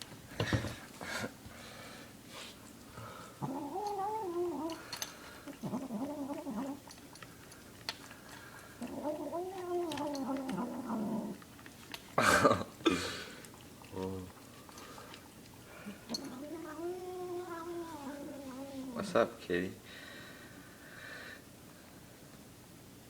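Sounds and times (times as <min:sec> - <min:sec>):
cat yowling: 0:03.4 - 0:04.8, 0:08.8 - 0:11.0, 0:16.1 - 0:19.0.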